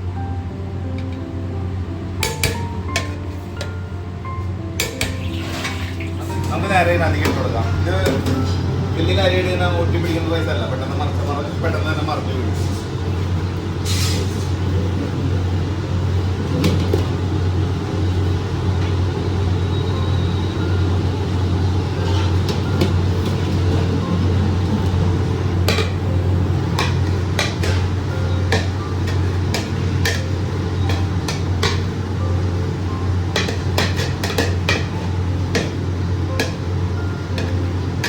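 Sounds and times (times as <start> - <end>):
metal spoon knocking on pot: 28.5 - 31.9, 33.3 - 36.7.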